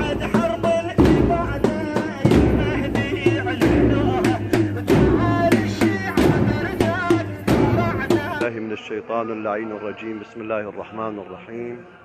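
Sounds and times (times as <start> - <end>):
loud irregular drum beats: 0.0 - 8.5.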